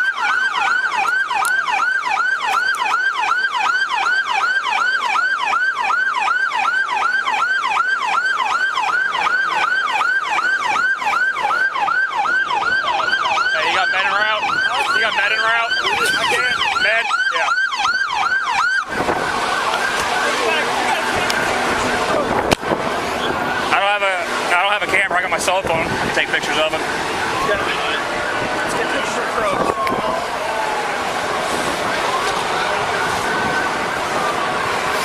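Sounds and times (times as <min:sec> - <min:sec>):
police siren yelping: 0:00.0 - 0:35.0.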